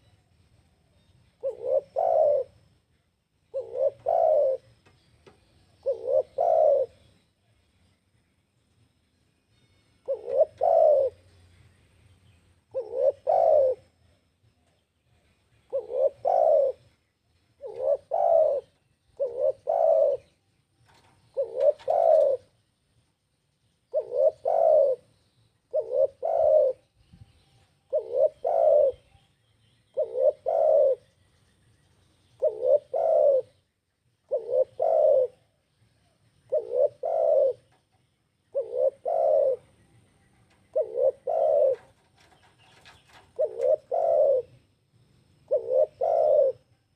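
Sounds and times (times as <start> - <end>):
dove cooing: 1.4 - 2.6, 3.5 - 5.0, 5.7 - 7.2, 10.0 - 11.4, 12.6 - 14.1, 15.1 - 22.6, 23.9 - 25.1, 25.7 - 29.3, 29.9 - 31.1, 32.3 - 44.7, 45.4 - 46.9.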